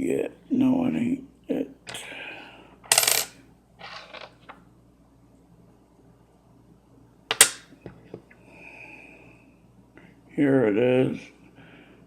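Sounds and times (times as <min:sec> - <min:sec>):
coins clinking: 0:02.9 - 0:04.4, 0:07.3 - 0:07.7.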